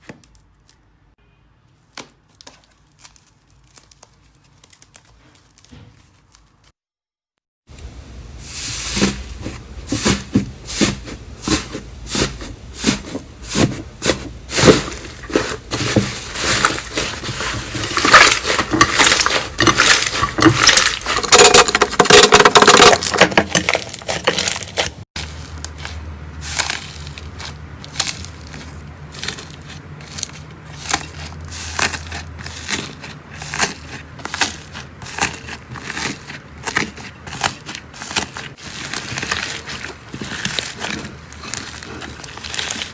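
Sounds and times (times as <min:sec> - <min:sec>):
slime squished by hand: 0:23.7 - 0:42.9.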